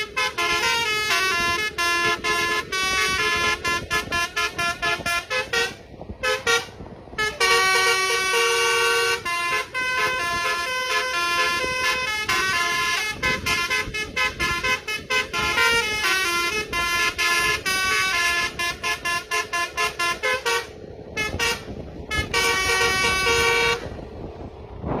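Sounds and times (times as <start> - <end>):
musical horn playing melody: 0.0 - 24.0.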